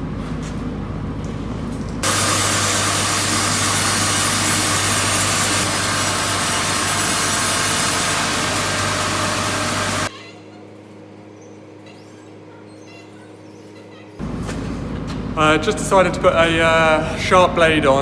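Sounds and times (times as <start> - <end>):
engine hum: 0.0 - 10.1
bandsaw blade cutting log: 2.0 - 10.1.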